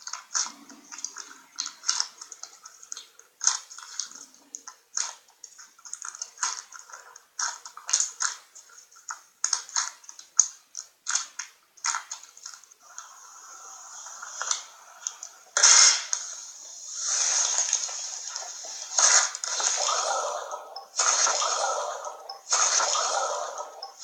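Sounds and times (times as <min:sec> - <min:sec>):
slime squishing with wet clicks: 0:00.0 - 0:12.7.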